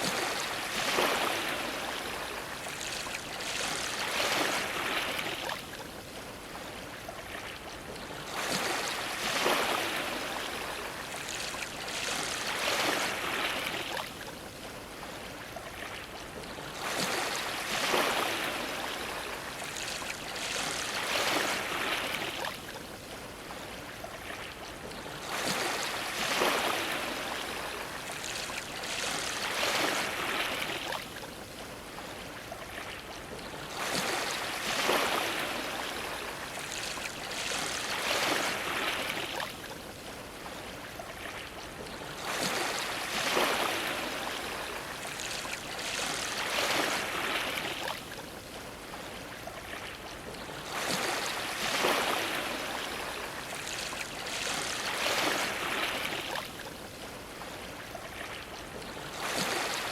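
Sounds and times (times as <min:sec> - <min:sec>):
waves splashing against a dock: 0:00.0 - 0:59.9.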